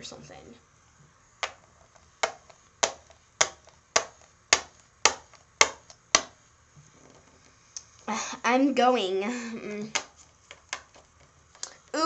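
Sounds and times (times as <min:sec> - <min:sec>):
plastic toy tapping on hard surface: 0:02.2 - 0:06.4.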